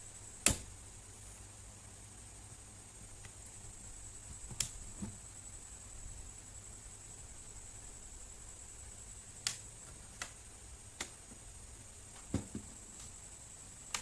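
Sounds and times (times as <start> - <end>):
light knocks on laptop: 12.3 - 12.7.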